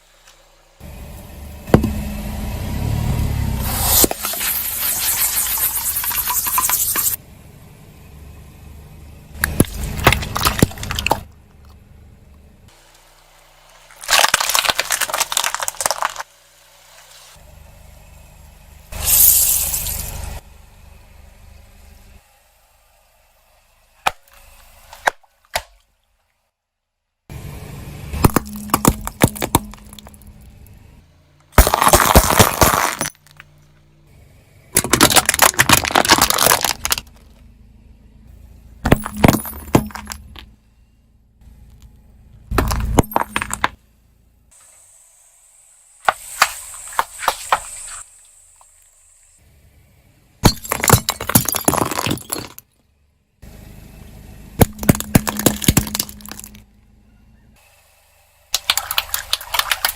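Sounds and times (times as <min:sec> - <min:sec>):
glassy clinks and crunches: 0:03.8 - 0:07.2, 0:14.0 - 0:16.2, 0:31.6 - 0:33.7, 0:34.8 - 0:37.2, 0:38.9 - 0:40.4, 0:42.6 - 0:43.8, 0:50.4 - 0:52.7, 0:54.6 - 0:56.6, 0:58.6 - 0:59.9
objects crushing and cracking: 0:09.4 - 0:11.8, 0:13.8 - 0:16.3, 0:28.2 - 0:30.3, 0:31.5 - 0:33.5, 0:34.8 - 0:37.4, 0:38.8 - 0:40.5, 0:42.5 - 0:43.8, 0:50.4 - 0:52.8, 0:54.6 - 0:56.6, 0:58.6 - 0:59.9.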